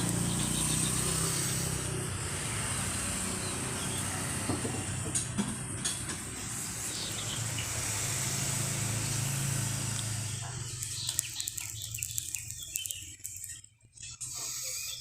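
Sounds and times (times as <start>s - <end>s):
machine hiss and hum: 0.0s - 13.5s
faint bird chirps: 10.2s - 15.0s.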